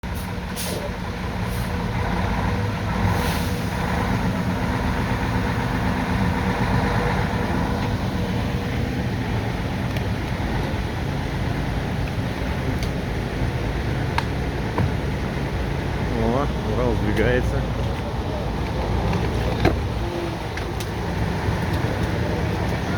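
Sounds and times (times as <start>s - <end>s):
truck diesel engine running: 0.0s - 22.9s
short air hisses: 3.1s - 3.7s.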